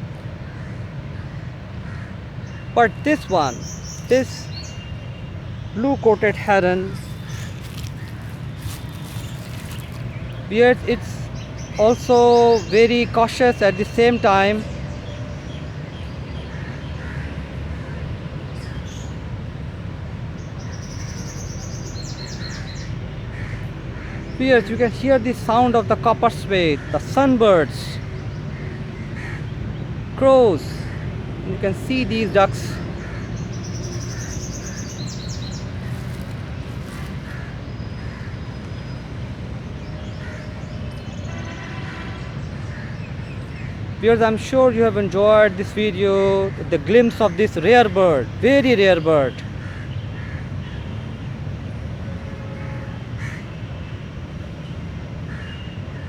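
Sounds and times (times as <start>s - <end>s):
crows cawing: 0.4s - 4.8s, 6.9s - 11.8s, 16.5s - 18.0s, 22.3s - 24.4s, 28.5s - 29.5s, 32.7s - 38.5s, 40.1s - 40.7s, 49.5s - 50.8s, 53.2s - 53.5s
small birds chirping and trilling: 0.4s - 17.3s, 20.4s - 51.0s.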